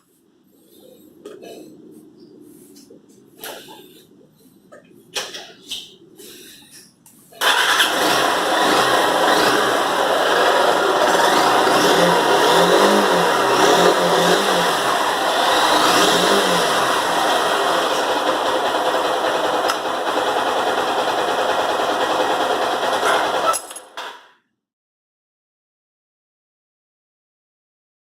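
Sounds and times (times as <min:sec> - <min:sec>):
motorcycle engine running: 0:07.4 - 0:24.0.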